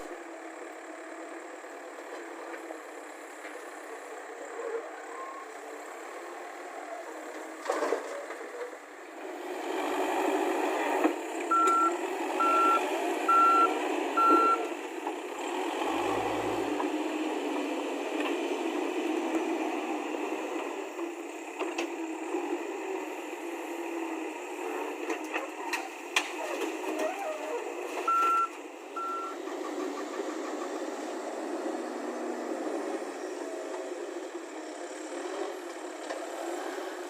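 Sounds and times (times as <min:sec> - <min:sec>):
diesel machine engine: 0:00.0 - 0:37.0
reversing alarm beeping: 0:11.5 - 0:14.7, 0:28.1 - 0:29.4.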